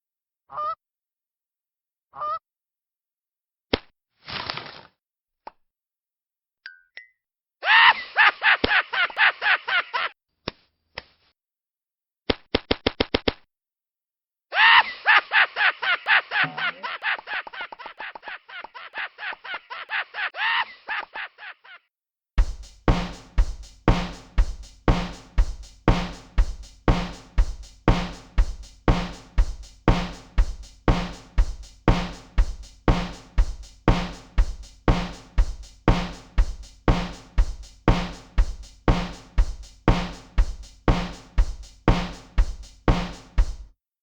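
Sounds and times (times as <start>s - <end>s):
drum kit beat: 22.4s - 43.7s.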